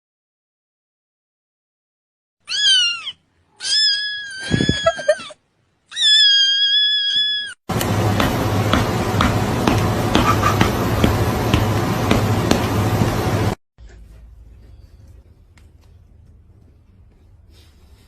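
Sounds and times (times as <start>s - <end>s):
cat meowing: 2.4s - 7.6s.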